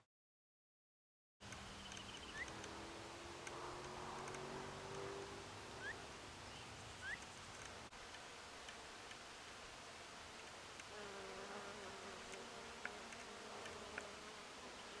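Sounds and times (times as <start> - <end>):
bird chirping: 1.4 - 7.8.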